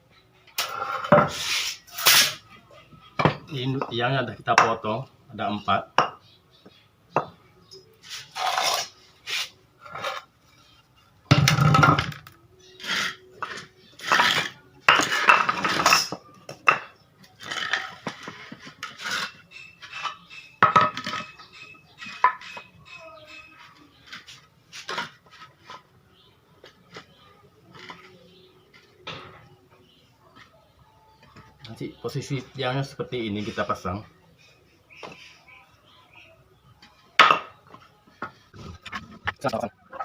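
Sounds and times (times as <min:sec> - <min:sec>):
wood knocking and clattering: 0:37.2 - 0:39.7.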